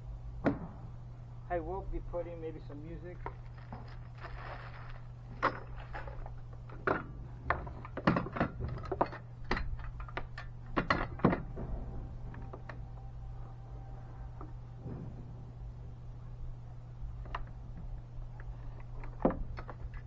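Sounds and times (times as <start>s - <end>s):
knocks and thuds on wood: 0.4s - 0.8s.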